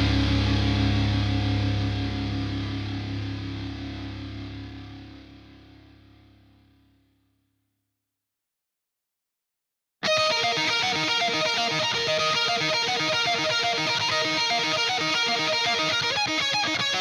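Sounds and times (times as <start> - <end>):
background guitar music: 0.0 - 6.4, 10.0 - 17.0.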